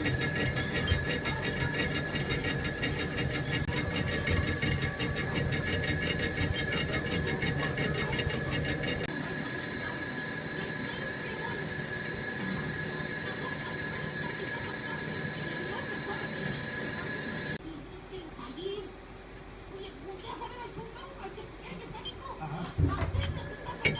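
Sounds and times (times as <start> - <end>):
rapid even ticking: 0.0 - 9.1
lathe machine hum: 0.0 - 17.6
high machine whine: 0.0 - 17.9.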